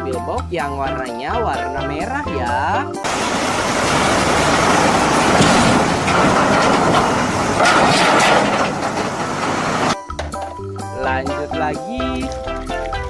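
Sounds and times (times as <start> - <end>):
running water splashing: 3.1 - 10.0.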